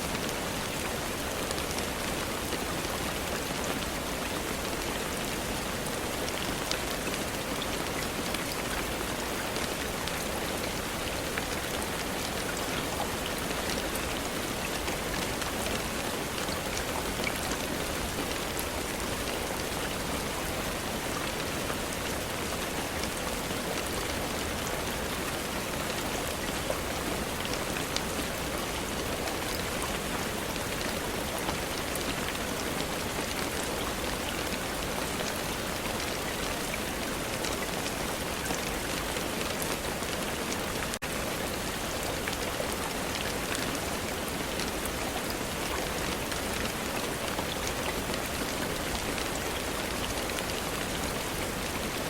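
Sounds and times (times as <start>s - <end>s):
steady rain hiss: 0.0s - 52.0s.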